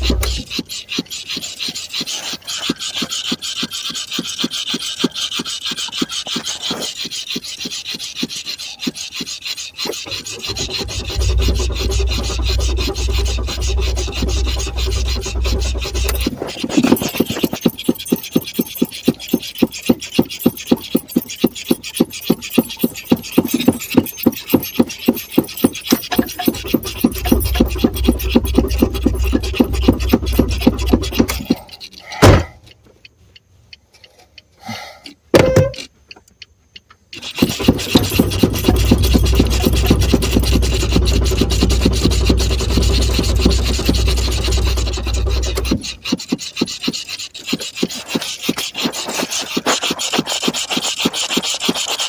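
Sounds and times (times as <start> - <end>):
car engine cranking: 0.0 - 2.6, 9.7 - 32.9, 35.6 - 46.8
thump: 32.2 - 32.6, 35.3 - 35.8.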